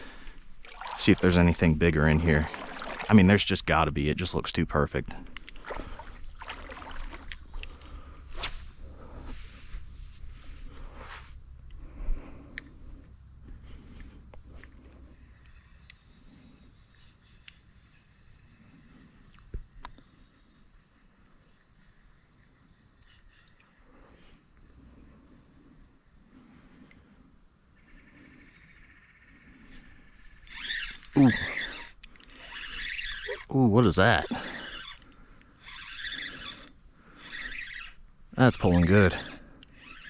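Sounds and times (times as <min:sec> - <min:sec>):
high-pitched insect chirring: 0:27.1 - 0:40.0.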